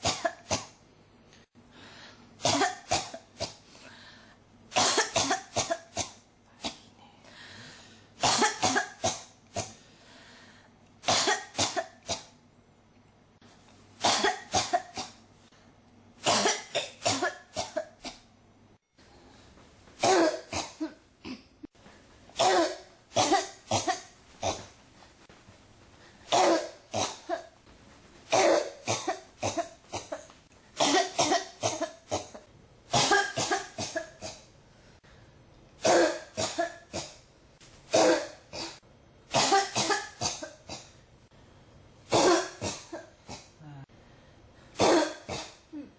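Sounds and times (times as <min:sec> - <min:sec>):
person coughing harshly: 0:00.0 - 0:00.8, 0:02.4 - 0:03.7, 0:04.8 - 0:06.9, 0:08.2 - 0:09.8, 0:11.1 - 0:12.4, 0:14.0 - 0:15.2, 0:16.2 - 0:18.2, 0:20.0 - 0:21.6, 0:22.4 - 0:24.7, 0:26.3 - 0:27.6, 0:28.3 - 0:34.5, 0:35.8 - 0:37.2, 0:37.9 - 0:41.0, 0:42.1 - 0:43.9, 0:44.8 - 0:45.9
short breaths: 0:01.7 - 0:02.3, 0:03.7 - 0:04.4, 0:07.0 - 0:08.1, 0:09.8 - 0:10.8.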